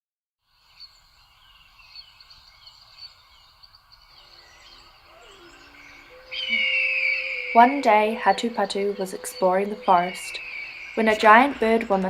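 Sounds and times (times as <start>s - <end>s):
birds chirping: 0.6s - 12.0s
low held notes: 5.1s - 12.0s.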